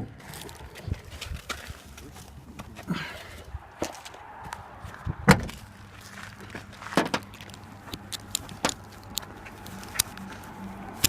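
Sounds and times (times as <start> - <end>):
sharp clicks and knocks: 6.9 - 10.3.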